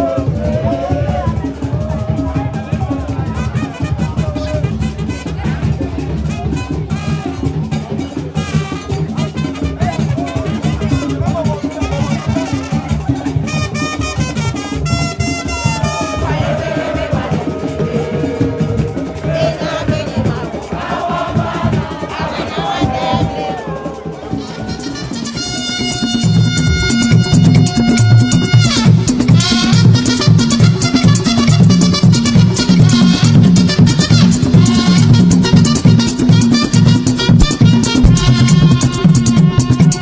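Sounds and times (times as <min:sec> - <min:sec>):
voices singing: 0:00.0 - 0:06.9, 0:09.8 - 0:29.7
high shrill melody: 0:15.1 - 0:21.9
dense drum percussion: 0:15.5 - 0:25.6, 0:33.7 - 0:40.0.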